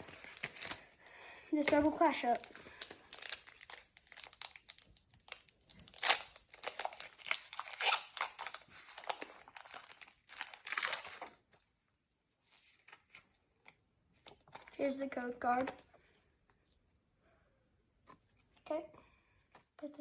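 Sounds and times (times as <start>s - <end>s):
foil wrapper tearing and crinkling: 0.0s - 1.0s, 2.0s - 11.4s.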